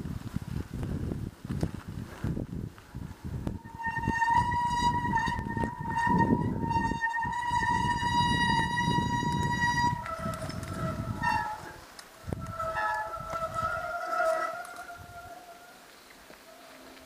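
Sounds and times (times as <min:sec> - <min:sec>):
wind: 0:00.0 - 0:17.0
tyres rumbling: 0:03.1 - 0:17.0
bike brakes squealing: 0:03.6 - 0:15.8.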